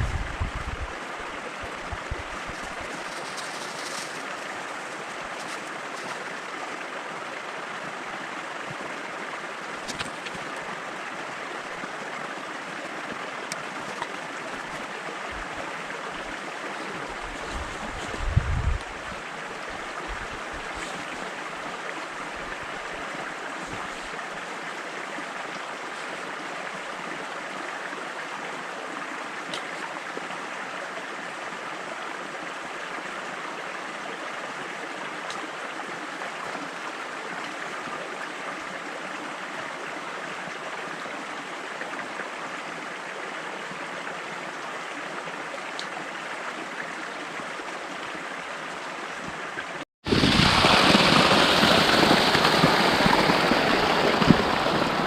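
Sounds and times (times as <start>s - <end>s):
low microphone rumble: 0.0s - 1.0s, 17.2s - 19.2s
running water rushing: 0.0s - 55.0s.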